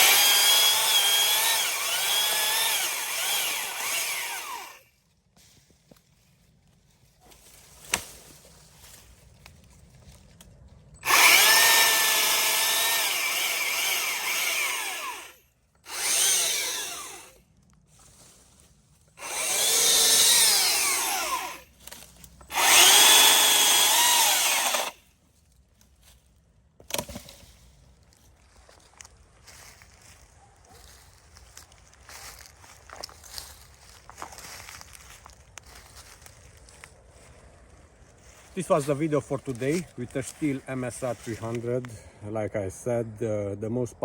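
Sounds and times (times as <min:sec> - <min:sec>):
battery chainsaw cutting wood: 0:00.0 - 0:04.9, 0:11.0 - 0:17.4, 0:19.2 - 0:21.7, 0:22.5 - 0:25.0.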